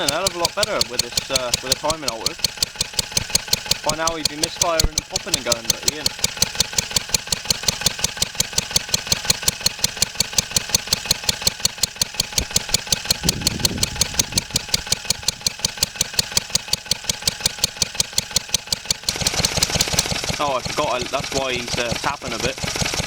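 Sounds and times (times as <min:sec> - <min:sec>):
light tapping: 0:00.0 - 0:20.2
stationary engine running: 0:00.0 - 0:23.0.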